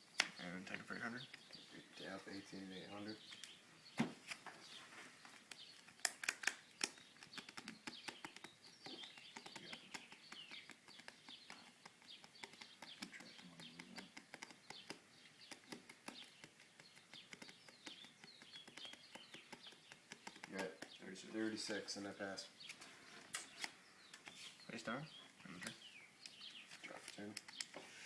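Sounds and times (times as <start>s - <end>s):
faint bird chirping: 0.0s - 28.0s
sharp clicks: 3.3s - 3.6s, 5.3s - 21.0s, 25.6s - 27.8s.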